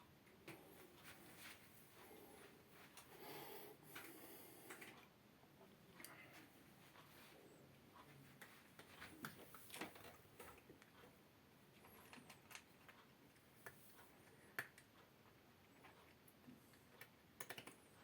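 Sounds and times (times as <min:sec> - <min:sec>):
cat breathing while sleeping: 0:01.9 - 0:05.0.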